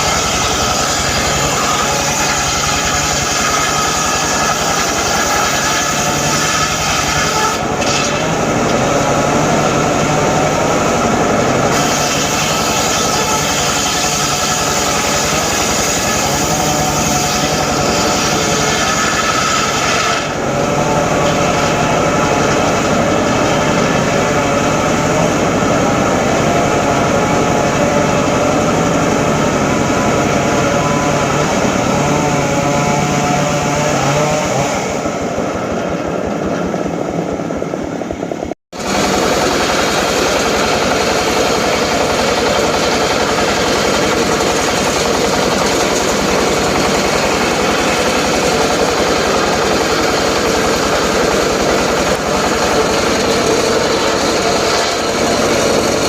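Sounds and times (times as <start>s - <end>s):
circular saw cutting wood: 0.0s - 56.0s.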